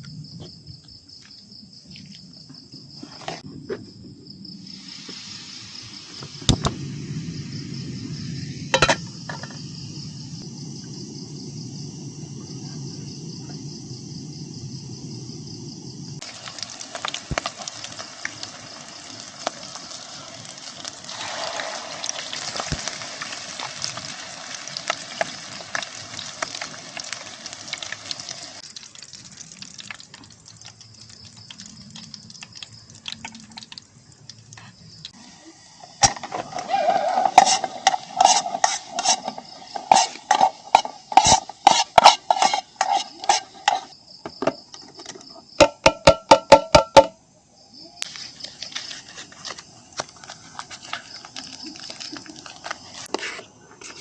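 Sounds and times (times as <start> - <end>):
insects chirping: 0.0 - 54.0
hissing sizzle: 4.6 - 8.8, 14.0 - 33.1.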